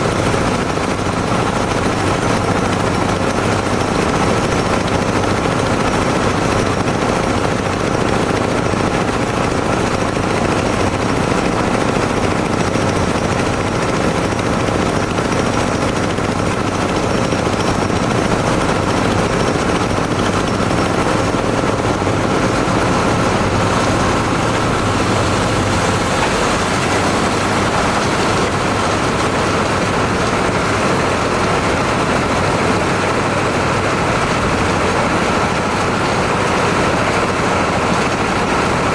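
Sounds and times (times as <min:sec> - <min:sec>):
drilling machine din: 0:00.0 - 0:38.9.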